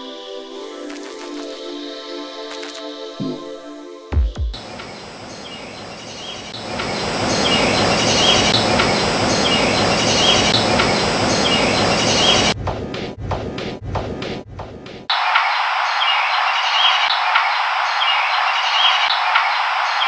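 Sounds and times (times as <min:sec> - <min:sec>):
loud outdoor rushing noise: 0:04.6 - 0:12.6.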